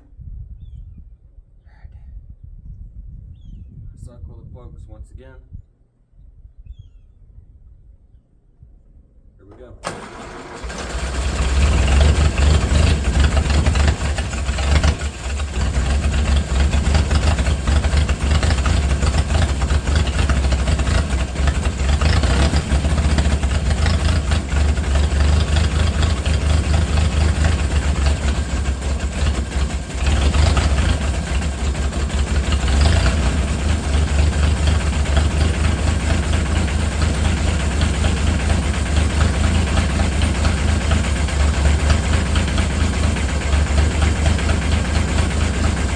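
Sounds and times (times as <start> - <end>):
diesel tractor engine idling: 9.6 - 45.9.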